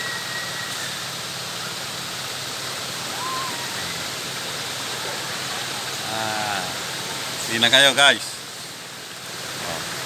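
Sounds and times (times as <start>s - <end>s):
flowing water: 0.0s - 10.0s.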